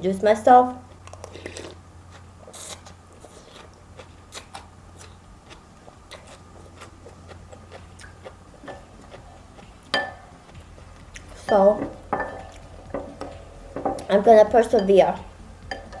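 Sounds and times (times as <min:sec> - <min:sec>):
chewing: 0:00.9 - 0:11.6
utensils clinking against bowl: 0:11.5 - 0:14.1.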